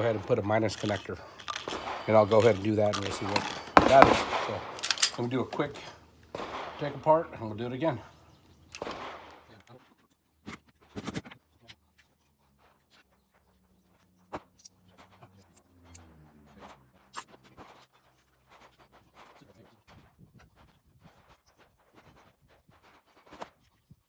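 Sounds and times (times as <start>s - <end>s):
pistol parts clicking: 0.0s - 8.0s, 8.7s - 9.4s.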